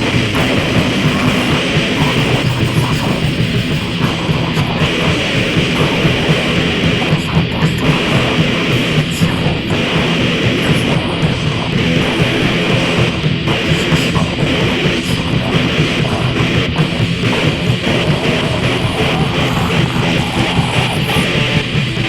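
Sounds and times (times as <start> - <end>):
distorted downtuned guitars: 0.0 - 22.0
fast pounding drums: 0.0 - 22.0.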